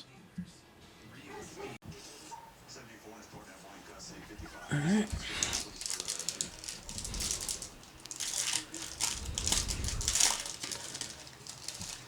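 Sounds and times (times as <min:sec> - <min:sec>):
foil wrapper tearing and crinkling: 0:05.1 - 0:12.0.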